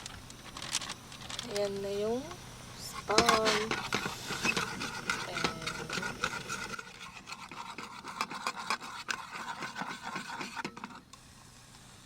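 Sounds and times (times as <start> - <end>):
faint steady hiss: 0.0 - 12.0
utensils scraping a pan: 2.8 - 11.1.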